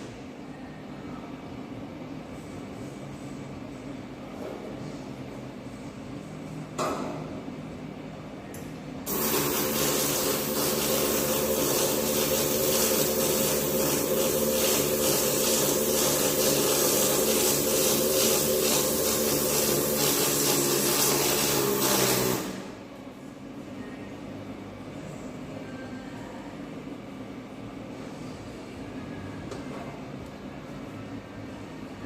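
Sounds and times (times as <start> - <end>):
arc welding crackle: 9.1 - 22.8.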